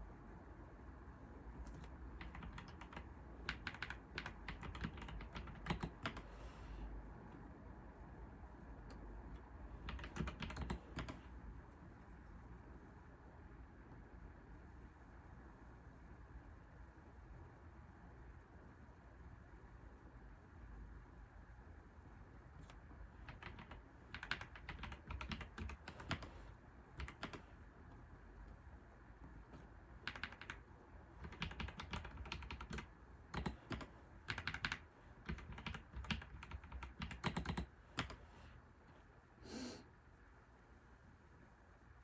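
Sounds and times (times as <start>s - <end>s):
typing on keyboard: 1.6s - 6.3s, 9.8s - 11.2s, 22.6s - 27.5s, 30.0s - 38.2s.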